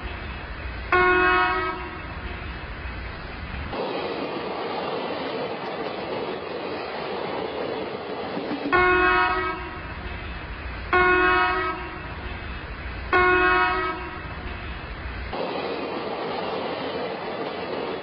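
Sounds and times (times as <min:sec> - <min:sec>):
train rumbling: 0:00.0 - 0:18.0
train horn blasts: 0:00.9 - 0:02.1, 0:08.7 - 0:10.3, 0:10.9 - 0:12.4, 0:13.1 - 0:14.6.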